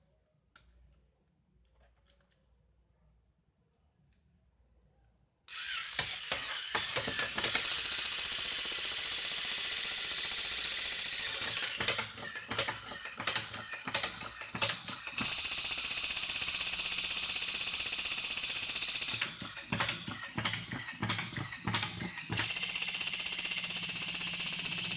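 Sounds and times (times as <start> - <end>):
toy motor whirring and clicking: 5.5 - 24.9.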